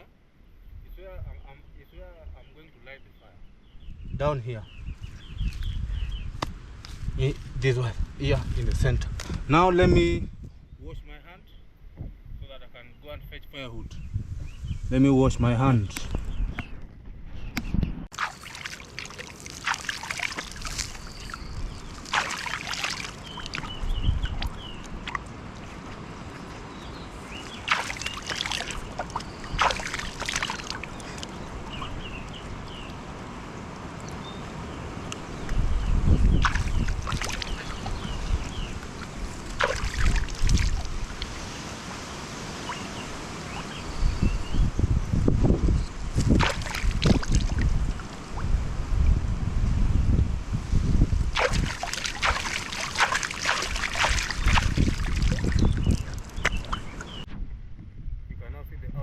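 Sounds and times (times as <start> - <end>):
wind buffeting the microphone: 3.4 - 18.2, 20.2 - 59.0
hands splashing in water: 18.1 - 32.4, 36.2 - 41.5, 46.2 - 48.5, 51.3 - 57.2.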